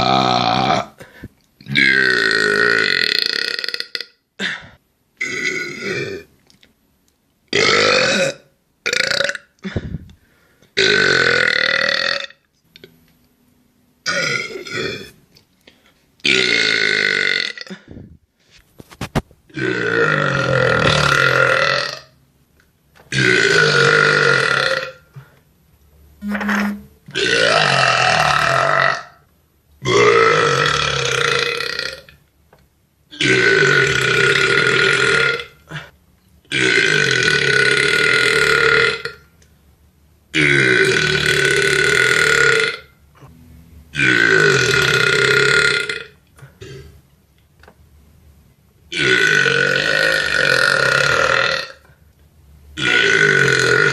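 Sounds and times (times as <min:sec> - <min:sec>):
man belching loudly: 0:00.0 - 0:01.0, 0:01.6 - 0:04.1, 0:05.2 - 0:06.3, 0:07.6 - 0:09.5, 0:10.8 - 0:12.4, 0:14.1 - 0:15.1, 0:16.2 - 0:18.1, 0:19.5 - 0:22.1, 0:23.1 - 0:25.0, 0:26.5 - 0:29.2, 0:29.8 - 0:32.1, 0:33.1 - 0:35.6, 0:36.5 - 0:39.2, 0:40.4 - 0:42.9, 0:43.9 - 0:46.9, 0:48.9 - 0:51.8, 0:52.8 - 0:53.9.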